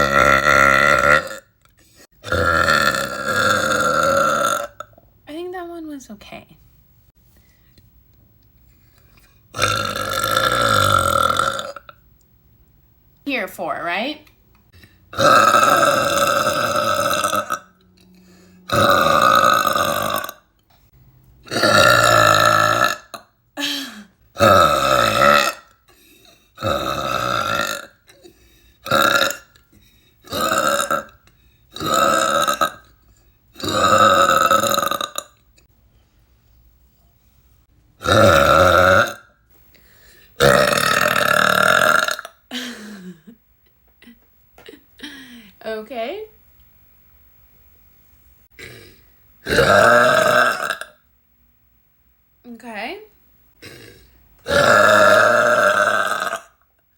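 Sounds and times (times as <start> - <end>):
woman burping loudly: 0.0 - 5.0, 9.5 - 12.0, 15.1 - 17.8, 18.6 - 20.5, 21.4 - 25.9, 26.5 - 33.0, 33.6 - 35.4, 38.0 - 39.3, 40.4 - 43.4, 48.6 - 51.0, 53.6 - 56.6.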